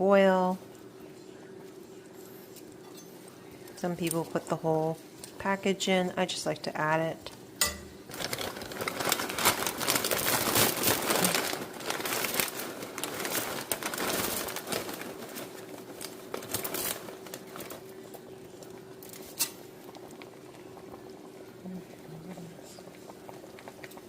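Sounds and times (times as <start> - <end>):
crinkling plastic packaging: 8.0 - 18.3.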